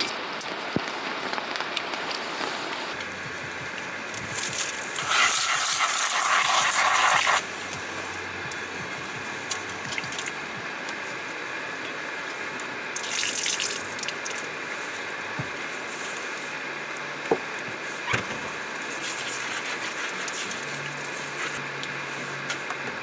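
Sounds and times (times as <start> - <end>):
water gushing: 0.0 - 7.5, 8.9 - 10.6, 12.9 - 15.2, 18.8 - 21.6
rain hissing: 0.0 - 17.2, 18.6 - 21.6.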